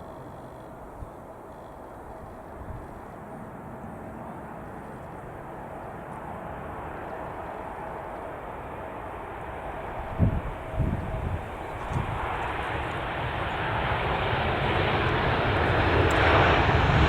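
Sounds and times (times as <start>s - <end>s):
jet engine rush with whine: 0.0s - 17.0s.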